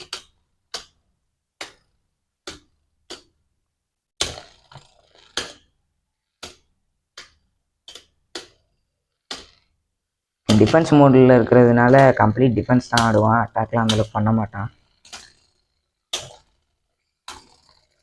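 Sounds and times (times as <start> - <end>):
spinning tops clashing: 10.5 - 18.0.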